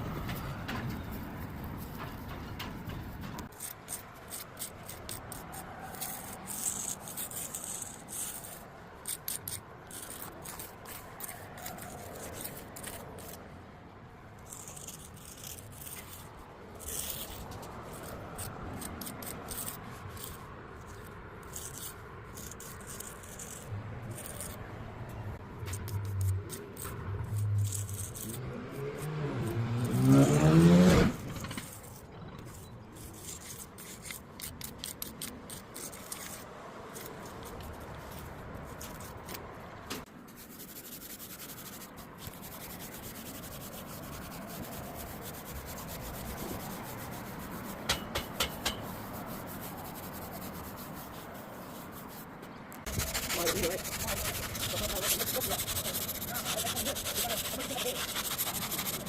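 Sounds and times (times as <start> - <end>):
scraping and rubbing: 0.0 - 13.5, 14.4 - 59.0
engine humming: 23.6 - 32.9.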